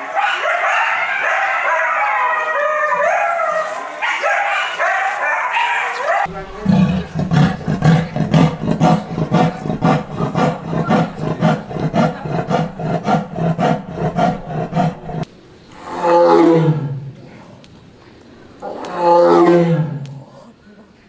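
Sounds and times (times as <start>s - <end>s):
big cat grunting: 6.3s - 17.5s
big cat roar: 6.3s - 17.5s, 18.6s - 20.4s.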